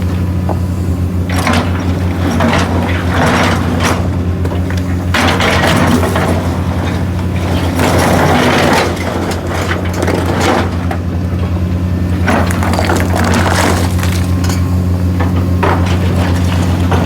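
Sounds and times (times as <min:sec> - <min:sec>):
diesel engine humming: 0:00.0 - 0:08.2, 0:09.0 - 0:17.0
stone rushing and dumping: 0:12.2 - 0:14.5.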